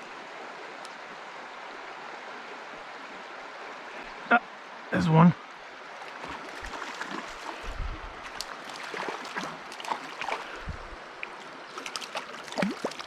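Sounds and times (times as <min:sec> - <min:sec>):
brook water running: 0:00.0 - 0:13.0
small clicks and splashes: 0:06.0 - 0:13.0.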